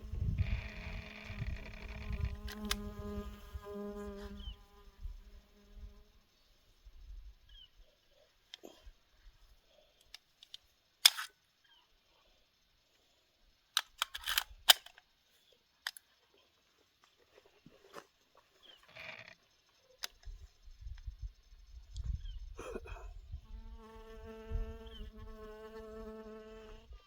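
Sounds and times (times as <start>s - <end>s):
sharp mechanical clicks: 0.6s - 2.9s, 10.0s - 11.4s, 13.8s - 15.0s.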